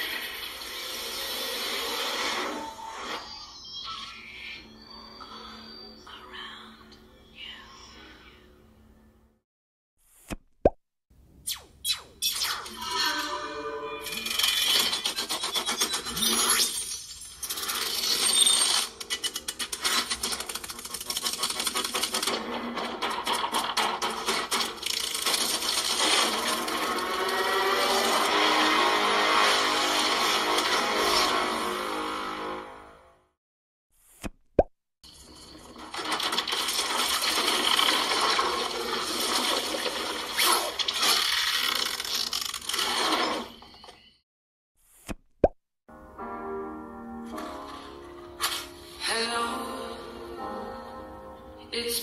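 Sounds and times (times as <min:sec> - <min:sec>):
sharp clicks and rattles: 0:19.0 - 0:27.0.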